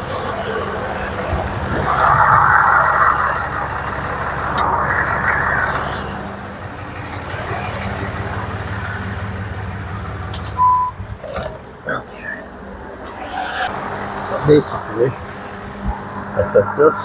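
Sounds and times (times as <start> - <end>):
diesel engine running: 0.0 - 12.9.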